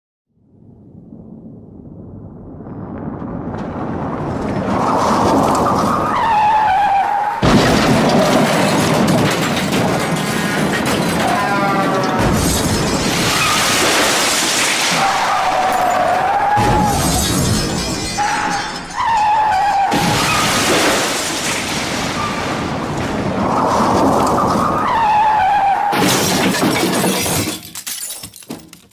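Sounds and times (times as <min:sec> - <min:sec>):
car crash: 0:02.6 - 0:28.8
falling debris: 0:02.7 - 0:28.9
metal crunching: 0:03.5 - 0:28.9
car tyres screeching: 0:04.4 - 0:07.4, 0:23.4 - 0:26.0
glass shattering: 0:07.4 - 0:24.7, 0:25.9 - 0:28.9
tyres screeching: 0:10.2 - 0:12.4.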